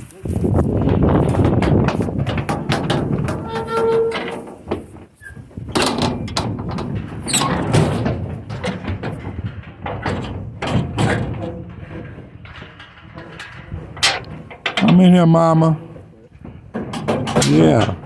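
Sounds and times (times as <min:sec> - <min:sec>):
cattle bumping metal panels: 0:14.0 - 0:15.2.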